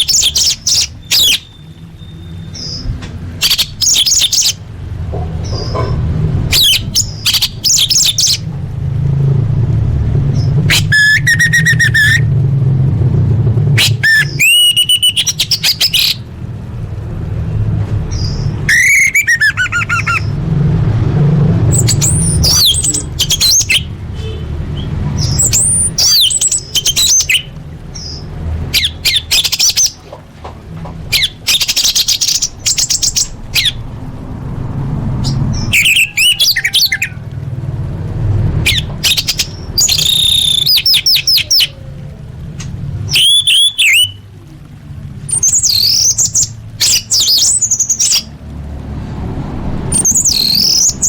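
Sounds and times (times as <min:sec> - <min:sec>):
bird singing whistles and trills: 0:00.0 - 0:04.6, 0:06.5 - 0:08.4, 0:10.4 - 0:12.3, 0:13.8 - 0:16.2, 0:18.1 - 0:20.3, 0:21.7 - 0:30.0, 0:31.1 - 0:33.8, 0:35.2 - 0:37.2, 0:38.6 - 0:41.8, 0:43.1 - 0:44.2, 0:45.3 - 0:48.3, 0:49.9 - 0:51.0
low background rumble: 0:00.0 - 0:51.0.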